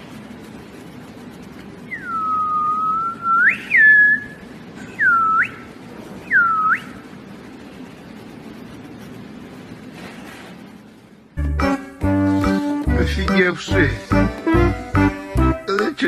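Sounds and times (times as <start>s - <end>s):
person whistling: 1.9s - 7.0s.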